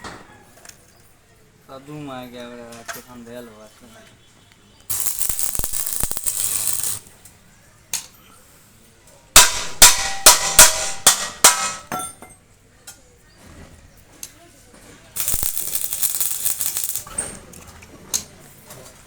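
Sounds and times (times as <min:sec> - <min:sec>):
steady hiss: 0:04.9 - 0:07.0, 0:15.2 - 0:17.1.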